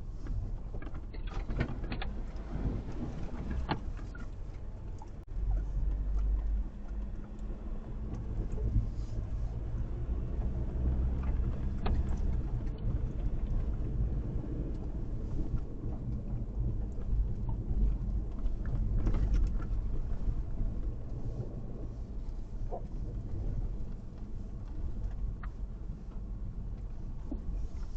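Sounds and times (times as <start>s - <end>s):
vehicle rumbling: 0.0s - 27.9s.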